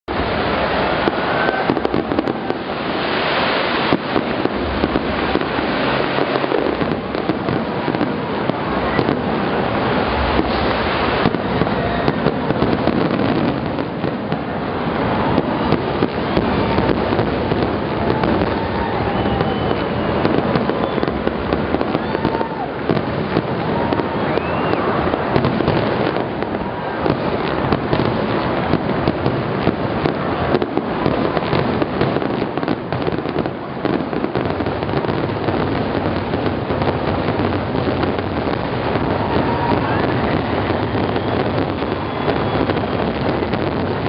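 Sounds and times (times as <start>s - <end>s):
dense crackling with sharp pops: 0.0s - 44.0s
faint short whistles: 19.0s - 20.1s, 24.2s - 24.9s.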